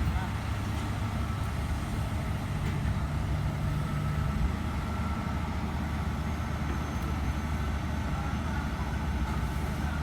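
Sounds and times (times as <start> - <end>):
excavator diesel engine rumbling: 0.0 - 10.0.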